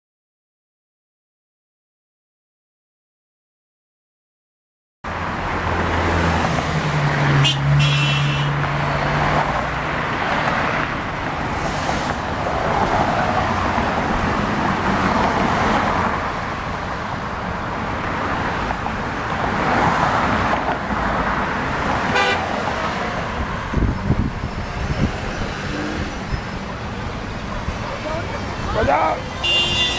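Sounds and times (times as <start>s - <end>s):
road traffic passing: 5.0s - 29.9s
car horns honking: 7.3s - 8.6s, 22.1s - 22.6s, 28.2s - 29.9s.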